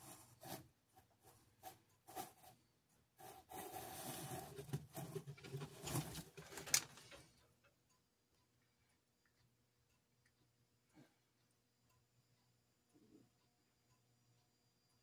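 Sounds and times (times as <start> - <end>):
small tools clicking and tapping: 4.6 - 7.4.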